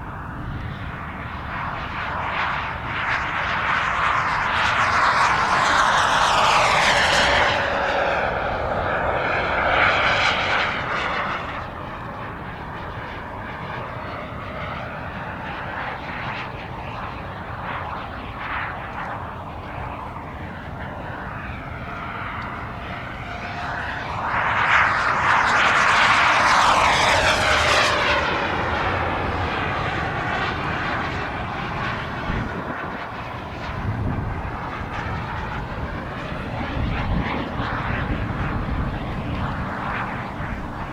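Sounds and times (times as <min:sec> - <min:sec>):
model jet turbine whine: 0:00.0 - 0:40.9.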